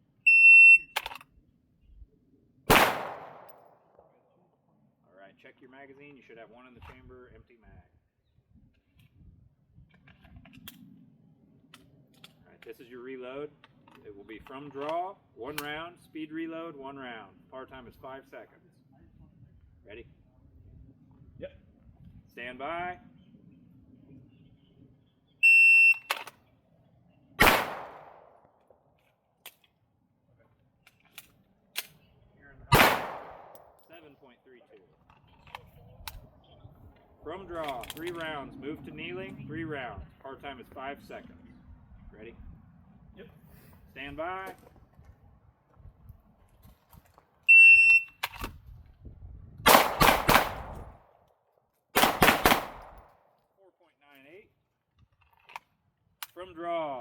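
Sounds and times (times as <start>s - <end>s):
pistol shot: 2.7s - 4.0s, 27.4s - 28.4s, 32.7s - 33.8s, 49.7s - 51.0s, 52.0s - 53.1s.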